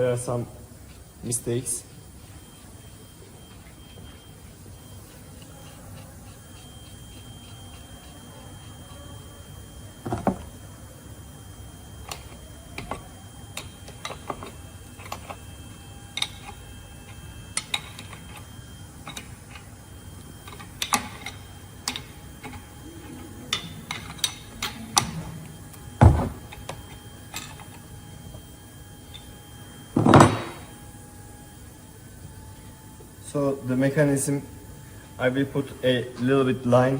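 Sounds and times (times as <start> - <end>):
metal parts clicking and clinking: 12.0 - 15.4, 16.1 - 19.8, 20.4 - 22.8, 23.5 - 25.2, 26.0 - 27.9
heavy thud: 26.0 - 26.4.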